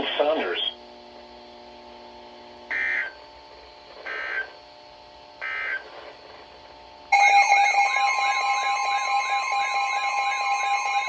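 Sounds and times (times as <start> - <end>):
low steady hum: 6.8 - 11.0
loud wavering alert tone: 7.1 - 11.0.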